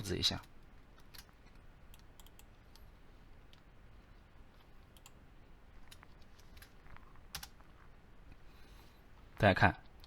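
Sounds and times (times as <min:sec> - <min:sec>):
mouse and keyboard clicks: 0:01.9 - 0:02.9.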